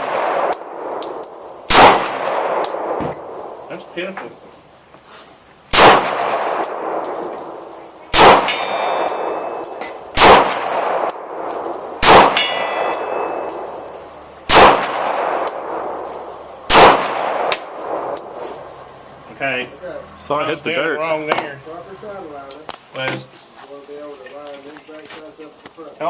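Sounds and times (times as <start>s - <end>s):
pistol gunshots with echo: 0.0s - 4.0s, 5.7s - 18.7s
steel plate target ringing: 6.5s - 10.2s, 11.0s - 14.2s.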